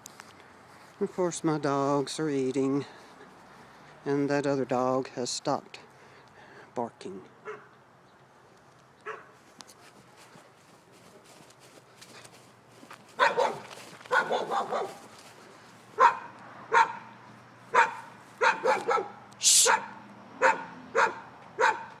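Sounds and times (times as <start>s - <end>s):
dog barking: 7.4s - 7.7s, 9.0s - 9.4s, 13.2s - 15.1s, 16.0s - 22.0s.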